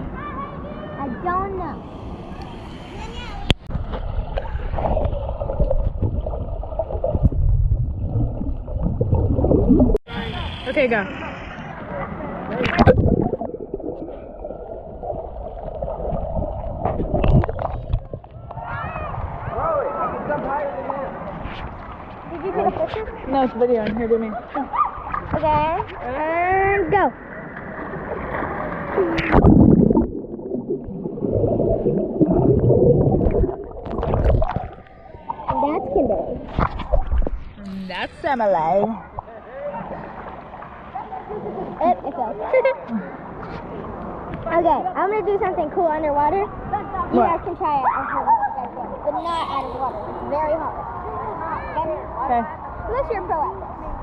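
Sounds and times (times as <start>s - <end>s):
muffled water sloshing and gurgling: 3.0s - 12.0s, 12.6s - 19.5s, 26.9s - 38.1s
splash into pool water: 27.4s - 37.5s
muffled underwater gurgling: 28.9s - 38.3s.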